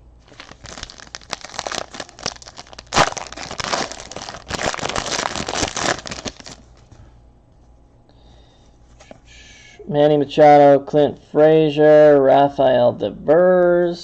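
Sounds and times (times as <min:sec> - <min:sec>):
foil wrapper crinkling: 0:00.2 - 0:06.8.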